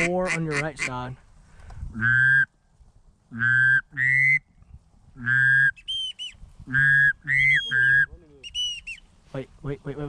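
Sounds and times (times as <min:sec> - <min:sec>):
duck call quacks: 0:00.0 - 0:01.0, 0:02.0 - 0:02.5, 0:03.3 - 0:04.4
short high whistles: 0:05.2 - 0:09.0.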